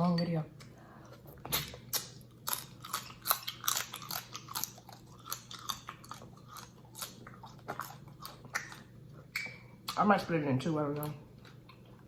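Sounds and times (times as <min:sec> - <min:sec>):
person chewing food: 0:00.6 - 0:10.0, 0:11.0 - 0:12.0.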